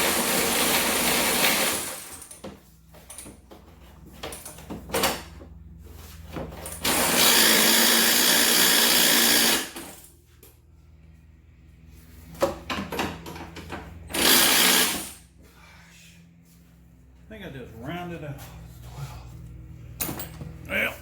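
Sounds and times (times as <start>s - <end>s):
power tool running: 0.0s - 2.3s, 6.8s - 10.0s, 14.1s - 15.3s.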